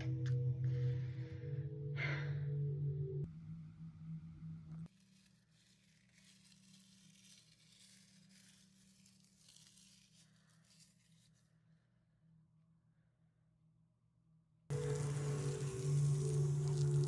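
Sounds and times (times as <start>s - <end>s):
low steady hum: 14.7s - 17.0s.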